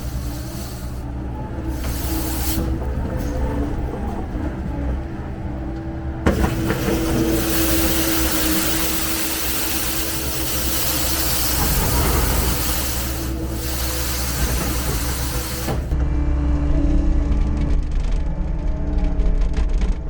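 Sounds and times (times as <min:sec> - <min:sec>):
broom hissing over pavement: 0:00.0 - 0:01.1, 0:01.7 - 0:02.9, 0:06.3 - 0:16.0
diesel engine running: 0:00.0 - 0:16.4.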